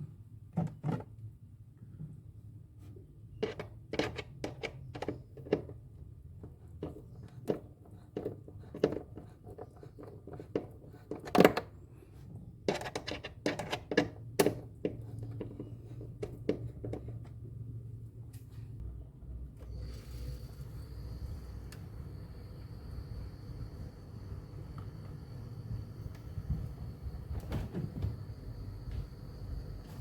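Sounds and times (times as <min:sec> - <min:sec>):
steady low hum: 0:14.5 - 0:30.0.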